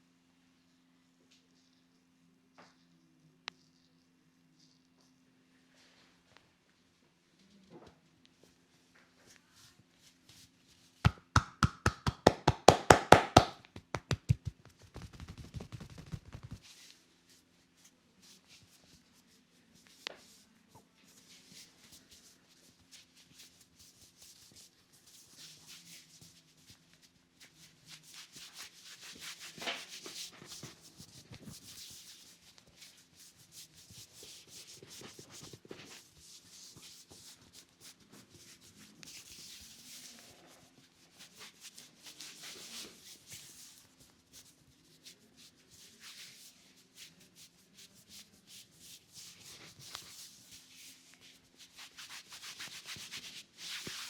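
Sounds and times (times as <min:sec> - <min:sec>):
hands rubbing hair and skin: 0:11.1 - 0:17.4, 0:48.1 - 0:54.0.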